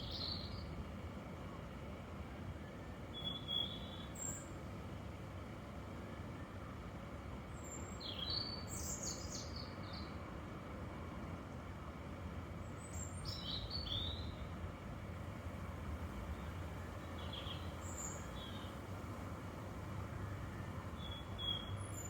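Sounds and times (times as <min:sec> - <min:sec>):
bird chirping: 0:16.4 - 0:18.8, 0:21.0 - 0:22.0.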